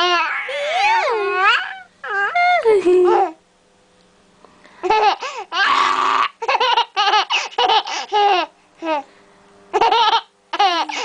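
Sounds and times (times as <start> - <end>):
baby laughing: 0.0 - 3.4, 4.8 - 9.1, 9.7 - 11.0.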